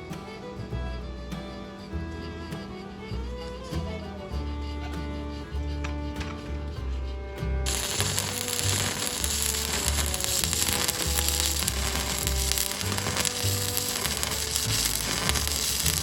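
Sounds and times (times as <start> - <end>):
background music: 0.0 - 16.0
welding arc crackling: 7.6 - 16.0.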